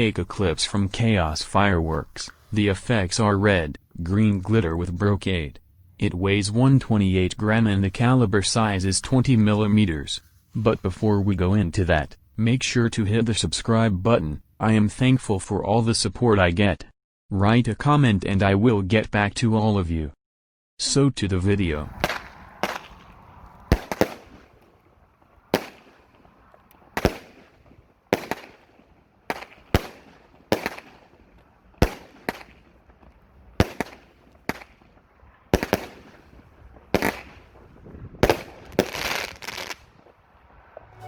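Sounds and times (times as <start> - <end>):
firework bangs: 21.5 - 41.0
firework crackling: 21.5 - 41.0.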